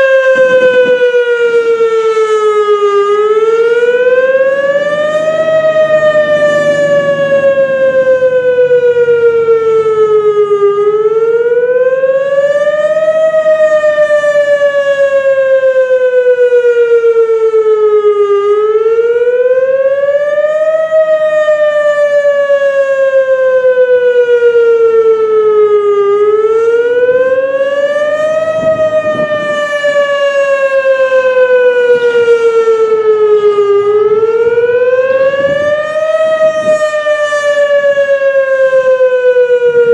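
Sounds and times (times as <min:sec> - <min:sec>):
warning siren wailing: 0:00.0 - 0:39.9.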